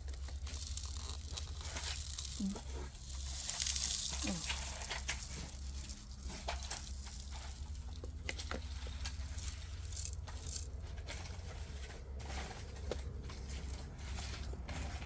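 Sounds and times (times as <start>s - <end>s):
seed pellets clicking and rattling: 0.0s - 15.0s.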